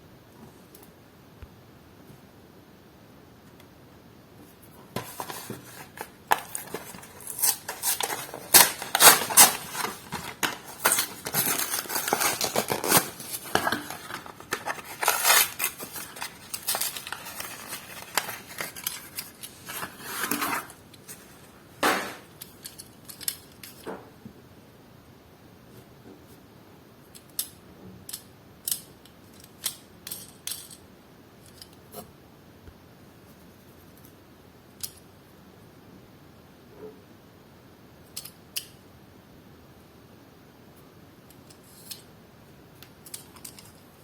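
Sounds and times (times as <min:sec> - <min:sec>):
plastic packaging crackling: 0:05.0 - 0:22.3.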